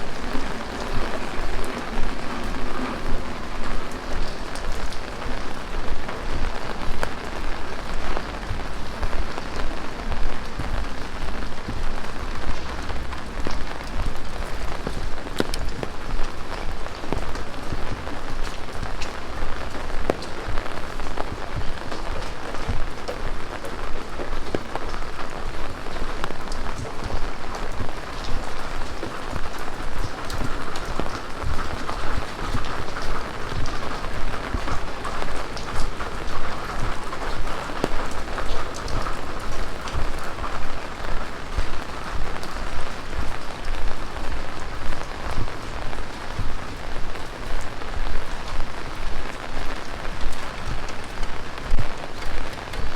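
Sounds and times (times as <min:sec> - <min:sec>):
heavy rain falling: 0:00.0 - 0:52.9.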